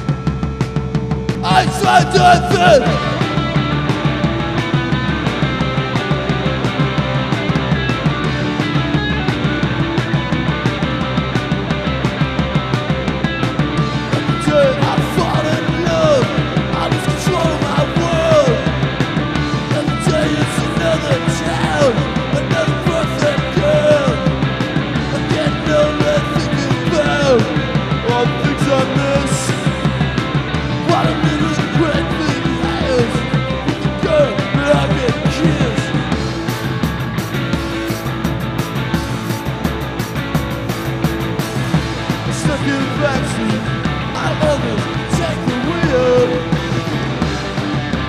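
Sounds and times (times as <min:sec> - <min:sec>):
live rock band playing: 0:00.0 - 0:48.0.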